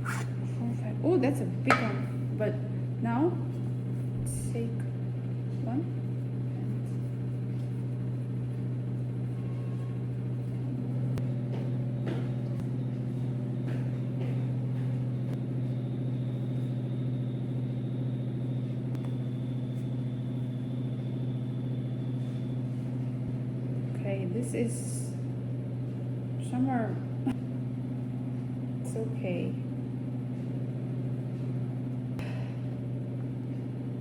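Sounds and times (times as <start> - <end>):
appliance fan humming: 0.0 - 34.0.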